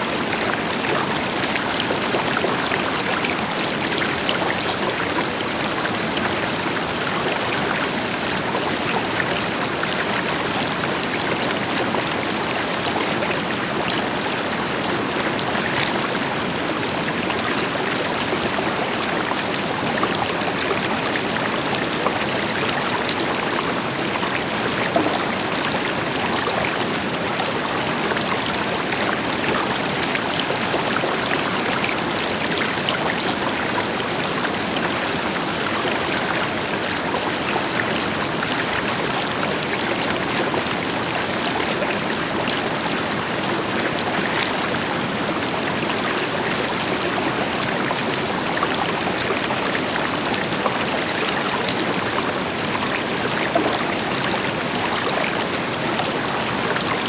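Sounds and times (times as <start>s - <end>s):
river water flowing over stones: 0.0s - 57.0s.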